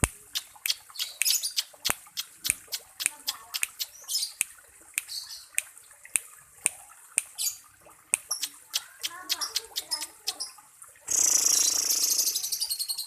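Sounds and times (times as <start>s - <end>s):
lovebird clicks and chirps: 0.0s - 12.3s
bird twittering: 0.3s - 4.4s, 8.3s - 13.0s.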